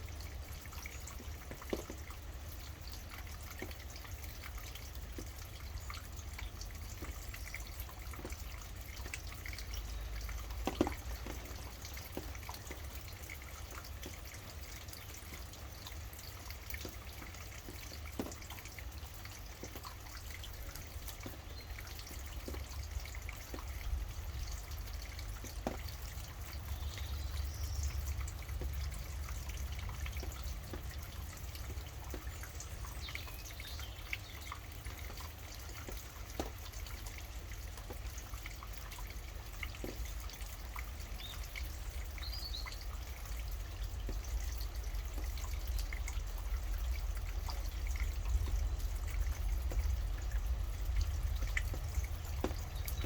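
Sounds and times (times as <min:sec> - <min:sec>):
rain dripping: 0:00.0 - 0:53.0
steady low rumble: 0:43.4 - 0:53.0.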